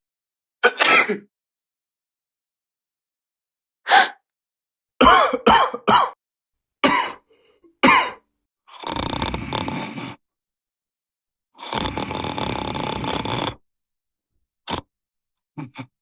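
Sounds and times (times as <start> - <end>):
comedy coughs: 0.6 - 1.3, 5.0 - 6.2, 6.8 - 7.2, 7.8 - 8.2
person gasping: 3.9 - 4.2
rattling snore: 8.7 - 10.2, 11.6 - 13.6, 14.7 - 14.9.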